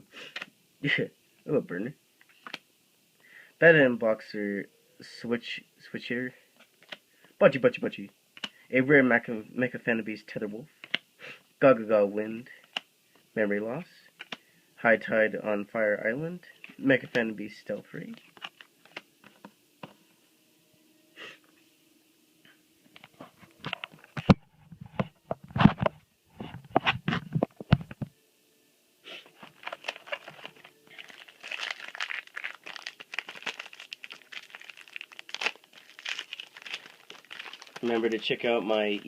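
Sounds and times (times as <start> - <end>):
foil wrapper crinkling and tearing: 29.4 - 39.0.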